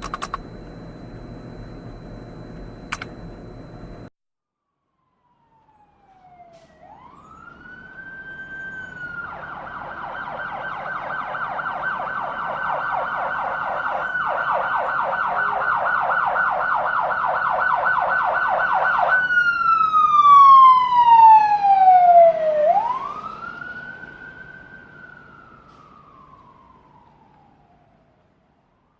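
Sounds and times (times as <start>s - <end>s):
emergency vehicle siren wailing: 0.0s - 4.1s, 4.8s - 28.9s.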